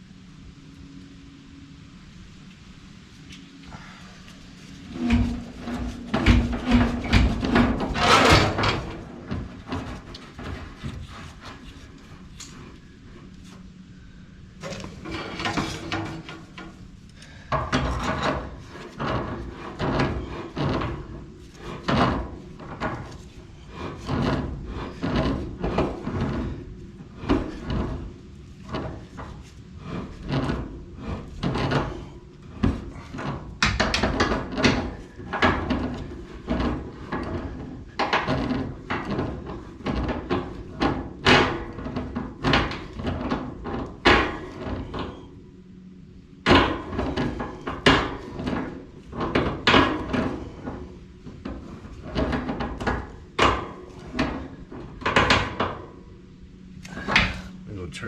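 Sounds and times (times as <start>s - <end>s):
tools knocking and scraping: 4.9s - 12.7s, 14.6s - 16.8s, 17.5s - 26.6s.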